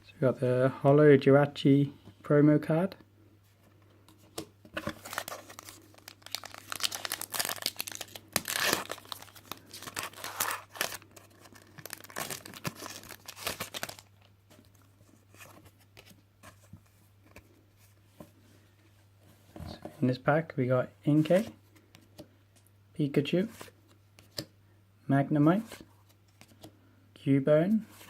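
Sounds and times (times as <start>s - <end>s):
foil wrapper tearing and crinkling: 5.0s - 14.1s.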